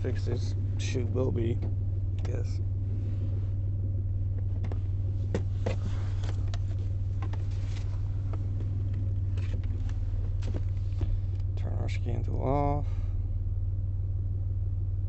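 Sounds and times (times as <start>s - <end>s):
car engine idling: 0.0s - 15.0s
light handling clicks and knocks: 1.4s - 2.6s, 4.3s - 11.6s.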